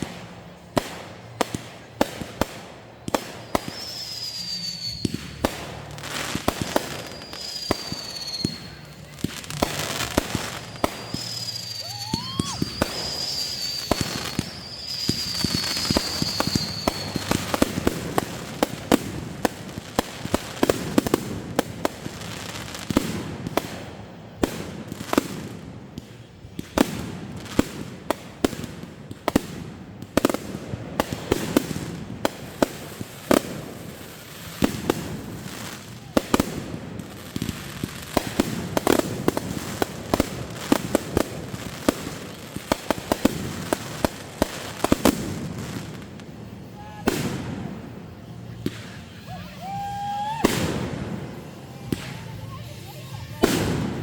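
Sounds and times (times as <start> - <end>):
fireworks banging and crackling: 0.0 - 54.0
rising whistle: 3.5 - 5.2, 6.9 - 8.9, 9.9 - 17.5, 49.1 - 52.6
high warbling whistle: 3.6 - 5.1, 7.0 - 8.9, 9.9 - 17.5.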